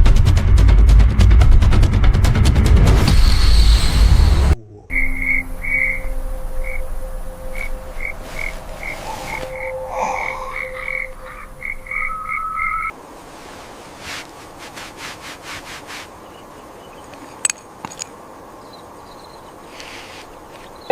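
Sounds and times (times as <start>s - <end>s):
loud rushing noise: 0.0s - 4.6s
frogs chirping: 3.7s - 12.9s, 18.5s - 19.7s, 20.7s - 20.9s
faint low steady tones: 4.3s - 12.3s.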